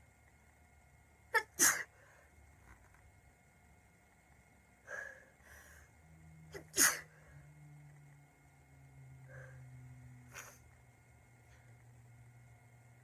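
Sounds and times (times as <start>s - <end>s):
girl sneezing: 1.4s - 1.9s, 6.6s - 7.1s.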